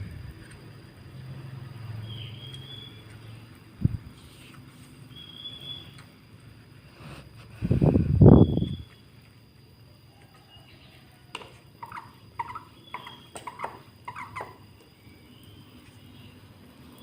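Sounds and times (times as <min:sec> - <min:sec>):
bird chirping squeakily: 0:02.0 - 0:03.4, 0:05.1 - 0:06.0, 0:08.2 - 0:09.1, 0:11.8 - 0:15.8.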